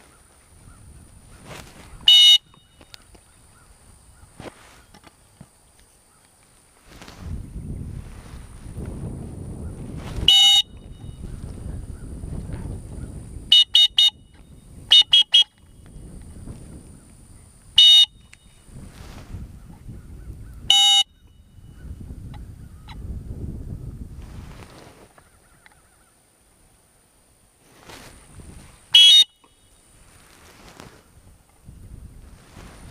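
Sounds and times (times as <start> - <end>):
dog-training whistle blasts: 2.1 - 2.8, 10.3 - 10.8, 13.5 - 15.6, 17.8 - 18.2, 20.7 - 21.1, 29.0 - 29.5.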